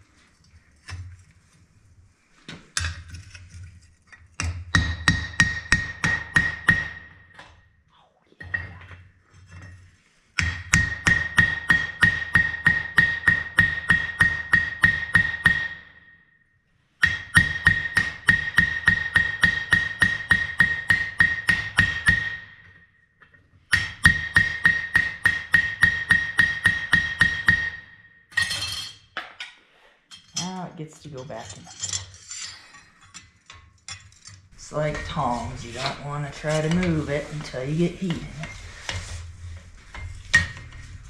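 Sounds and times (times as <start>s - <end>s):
hammer striking steel on anvil: 4.7s - 7.5s, 10.4s - 16.2s, 17.0s - 22.8s, 23.7s - 29.4s, 39.9s - 40.9s.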